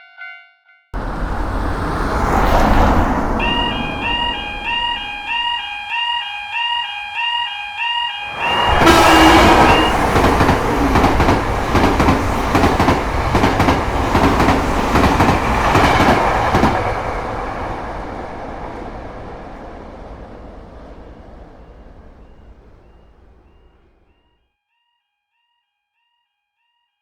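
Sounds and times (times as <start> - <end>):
train wheels clattering: 1.0 - 5.6, 8.3 - 24.1.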